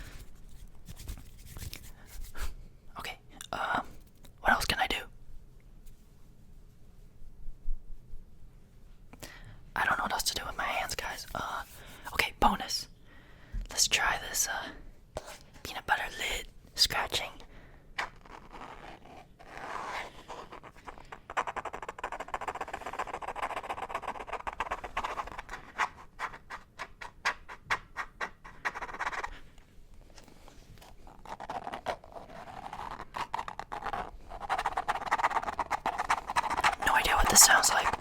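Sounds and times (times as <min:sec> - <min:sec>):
fingers scratching jar lid: 0:18.0 - 0:29.3, 0:31.1 - 0:38.0.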